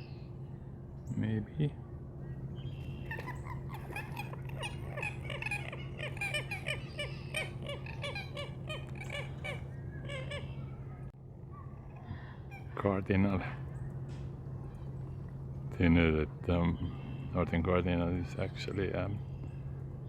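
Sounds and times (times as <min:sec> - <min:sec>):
steady low hum: 0:00.0 - 0:20.0
bird harsh clucking calls: 0:03.0 - 0:10.6.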